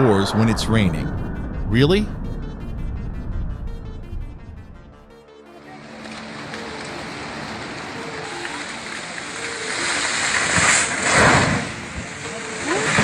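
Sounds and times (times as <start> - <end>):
heavy rain: 5.6 - 13.0
water rushing: 5.6 - 13.0.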